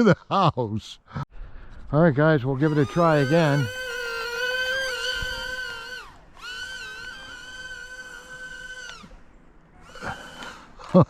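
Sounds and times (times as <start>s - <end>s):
model airplane motor whining: 2.5s - 11.0s.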